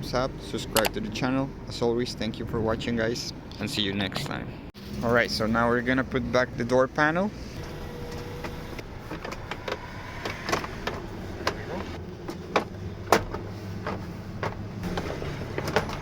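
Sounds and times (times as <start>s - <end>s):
steady low hum: 7.3s - 15.4s.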